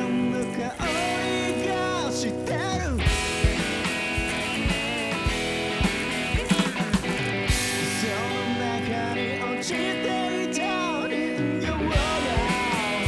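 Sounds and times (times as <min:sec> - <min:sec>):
electric guitar chords: 0:00.0 - 0:13.0
quick drum run: 0:03.1 - 0:08.0, 0:12.0 - 0:13.0.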